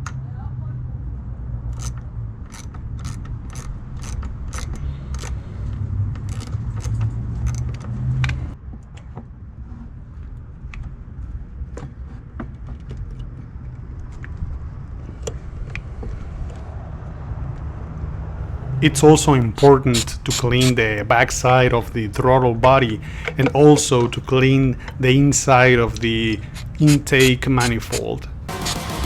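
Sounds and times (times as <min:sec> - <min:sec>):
metal parts clicking and clinking: 0:01.8 - 0:05.4, 0:06.3 - 0:07.9
steady low hum: 0:18.4 - 0:29.0.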